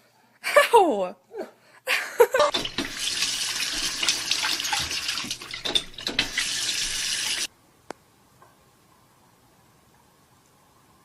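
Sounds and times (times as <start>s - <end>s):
water running: 2.5s - 7.5s.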